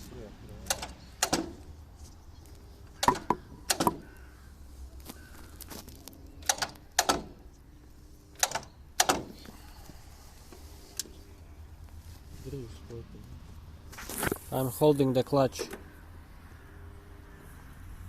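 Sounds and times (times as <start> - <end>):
sharp clicks and knocks: 0.6 - 1.7, 2.9 - 4.1, 6.4 - 7.4, 8.4 - 9.4.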